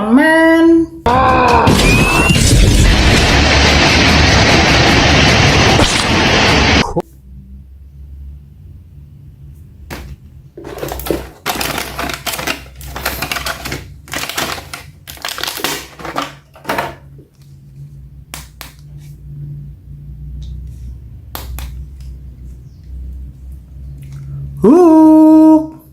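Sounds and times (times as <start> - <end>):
steady low hum: 2.4 - 15.1, 15.9 - 24.6
plastic packaging crackling: 9.9 - 17.1.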